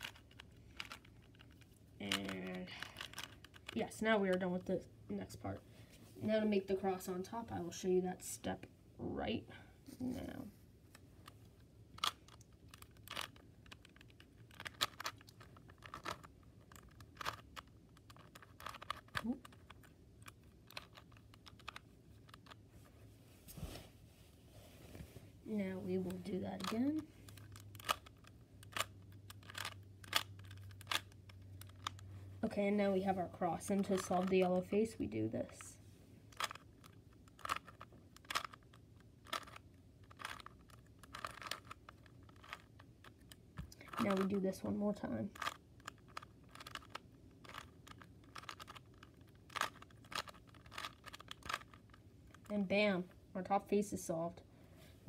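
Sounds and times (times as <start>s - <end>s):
puzzle cube plastic clicking: 0.0s - 4.8s, 10.9s - 22.6s, 25.9s - 32.1s, 33.4s - 52.5s.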